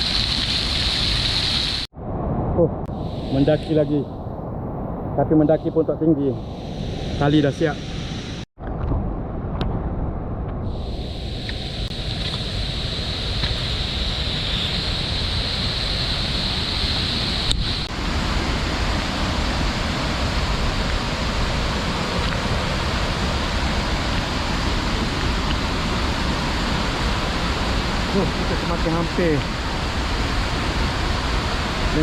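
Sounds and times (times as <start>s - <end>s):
high whine: 0.0s - 32.0s
river water and waterfall rushing: 11.9s - 32.0s.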